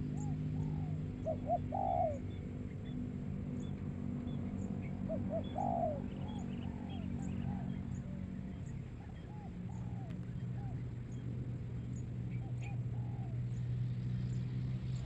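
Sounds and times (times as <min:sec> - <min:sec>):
dove cooing: 0:00.0 - 0:02.5, 0:04.8 - 0:08.2, 0:08.8 - 0:11.2, 0:12.3 - 0:13.7
small birds chirping: 0:00.0 - 0:15.0
steady low hum: 0:00.0 - 0:15.0.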